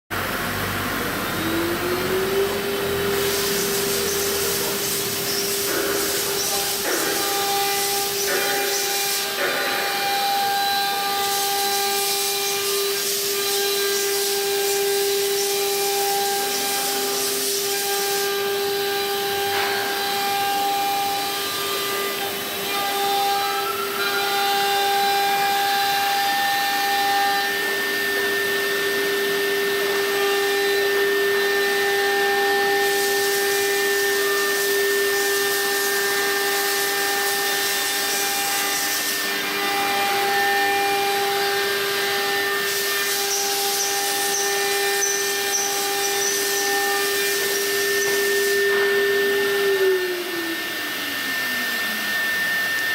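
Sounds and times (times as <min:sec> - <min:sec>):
wood router spindle whine: 0:00.1 - 0:52.9
router cutting wood hiss: 0:00.2 - 0:52.9.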